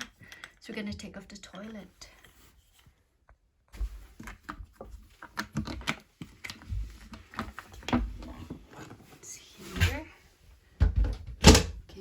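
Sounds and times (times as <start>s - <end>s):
hands unscrewing a pipe connection: 0.0s - 0.6s, 1.5s - 9.2s.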